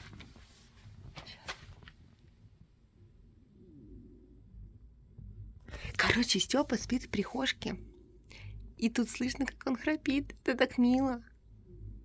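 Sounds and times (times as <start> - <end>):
soft speech: 5.8 - 7.9, 8.8 - 11.3.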